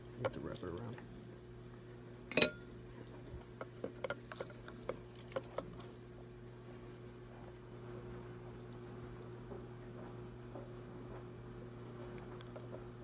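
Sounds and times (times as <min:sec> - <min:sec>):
steady low hum: 0:00.0 - 0:13.0
clinks of parts and tools: 0:02.3 - 0:02.6.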